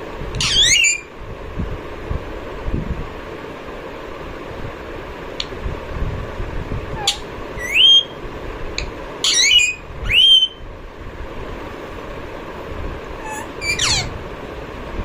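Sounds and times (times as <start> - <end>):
steady background hiss: 0.0 - 15.0
parakeet calls: 0.4 - 1.1, 7.0 - 8.2, 9.2 - 10.6, 13.2 - 14.2
parakeet whistling: 0.4 - 1.1, 7.0 - 8.2, 9.2 - 10.6, 13.2 - 14.2.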